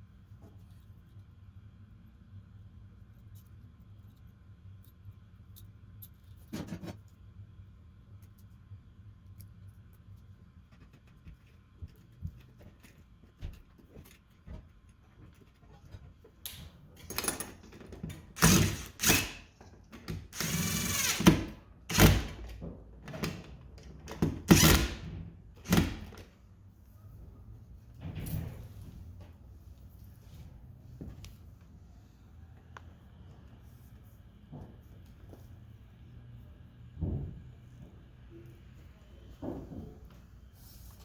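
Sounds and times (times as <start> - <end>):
tools clicking and clattering: 15.4 - 21.3
power driver whirring: 18.3 - 19.5, 20.2 - 22.5.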